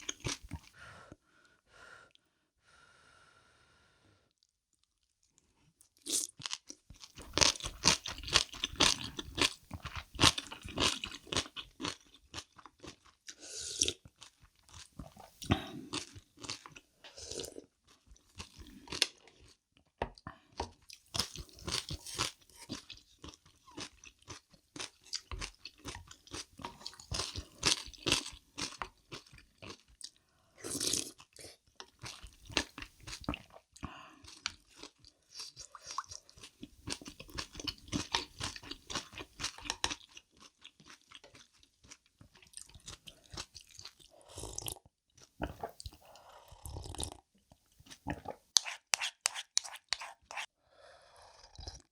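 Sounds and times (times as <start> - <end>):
chewing: 4.4 - 19.6, 20.2 - 50.5
crunchy food crunching: 6.0 - 16.8.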